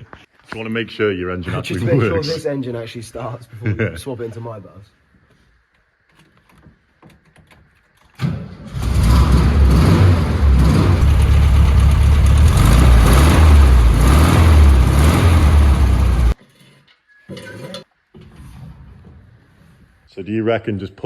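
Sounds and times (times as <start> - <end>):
engine cranking and starting: 8.2 - 16.4.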